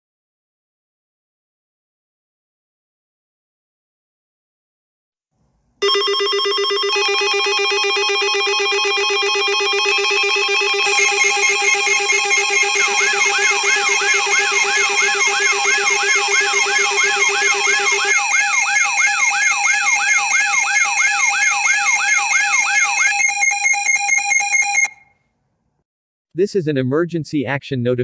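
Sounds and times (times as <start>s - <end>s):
pulsing electronic alarm tones: 5.8s - 25.1s
yelping siren sweep: 6.9s - 25.1s.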